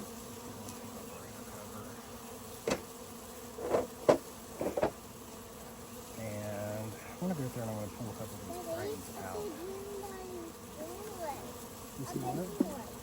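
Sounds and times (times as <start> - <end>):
bees buzzing: 0.0 - 13.0
wooden hive parts knocking: 2.6 - 2.9, 3.6 - 5.0.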